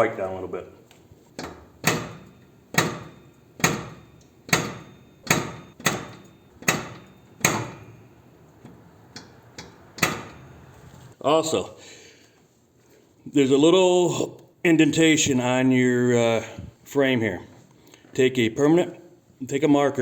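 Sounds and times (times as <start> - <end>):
metal lift clicking: 1.4 - 11.2.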